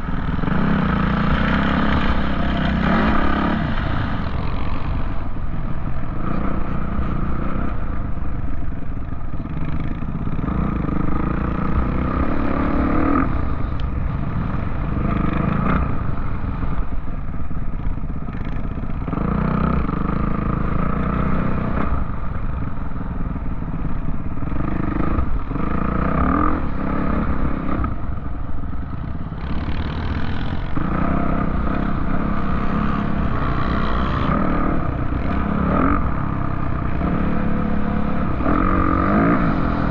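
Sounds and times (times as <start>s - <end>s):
off-road vehicle engine revving: 0.0s - 4.8s, 9.5s - 13.5s, 29.4s - 39.9s.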